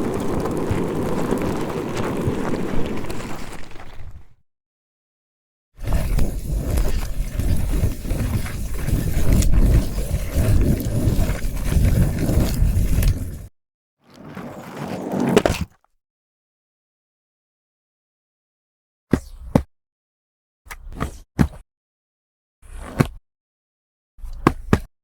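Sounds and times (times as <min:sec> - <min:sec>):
skateboard wheels rolling on pavement: 0:00.0 - 0:04.4, 0:05.8 - 0:15.8.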